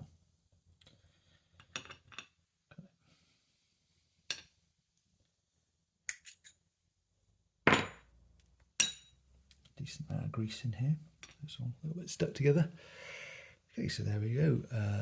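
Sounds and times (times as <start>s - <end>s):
small metal parts clicking and clinking: 6.1s - 6.6s.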